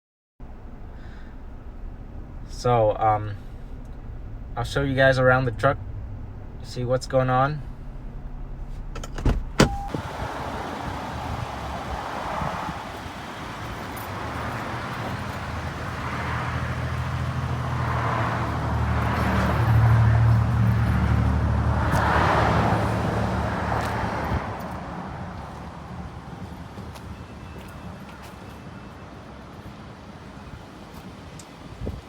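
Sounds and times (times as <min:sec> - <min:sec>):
vehicle passing by: 0:10.0 - 0:27.2.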